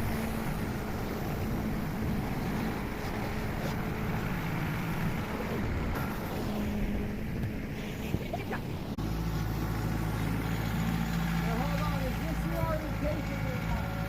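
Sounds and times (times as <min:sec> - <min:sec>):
wind noise on microphone: 0:00.0 - 0:09.0
tractor engine running: 0:00.0 - 0:14.0.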